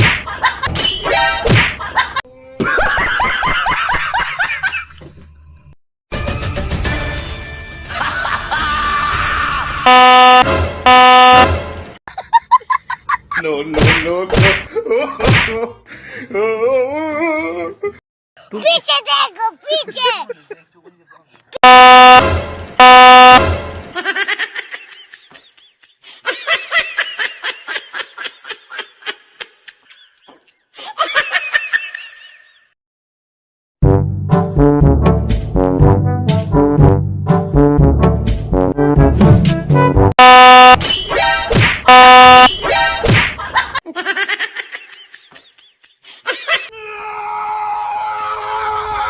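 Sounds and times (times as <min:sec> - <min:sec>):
people shrieking and laughing: 0:07.9 - 0:09.9, 0:44.4 - 0:49.0
train horn blast: 0:09.9 - 0:11.7, 0:21.6 - 0:23.8
steady horn tone: 0:09.9 - 0:12.0, 0:21.6 - 0:23.9, 0:40.2 - 0:40.8, 0:41.9 - 0:42.5.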